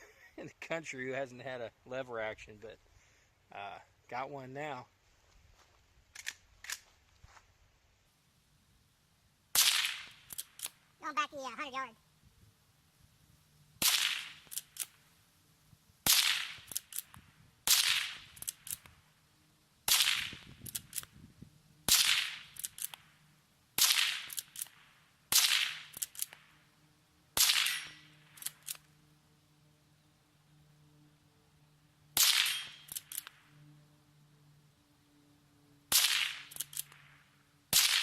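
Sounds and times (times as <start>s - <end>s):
rifle shots: 9.5s - 10.8s, 13.8s - 15.0s, 16.0s - 18.9s, 19.9s - 21.1s, 21.9s - 23.0s, 23.8s - 26.5s, 27.4s - 28.8s, 32.2s - 33.4s, 35.9s - 37.1s, 37.7s - 38.0s.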